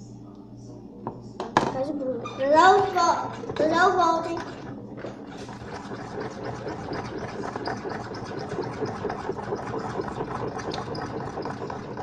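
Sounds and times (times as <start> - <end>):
slime being stirred and squished: 2.8 - 12.0.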